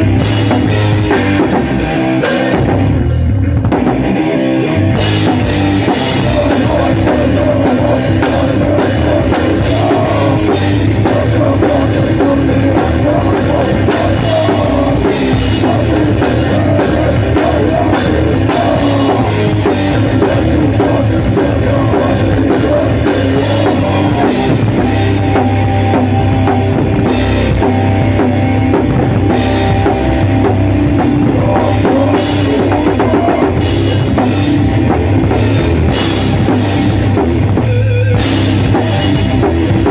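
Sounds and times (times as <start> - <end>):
drum kit: 0.0 - 39.9
heavy rock band playing: 0.0 - 39.9.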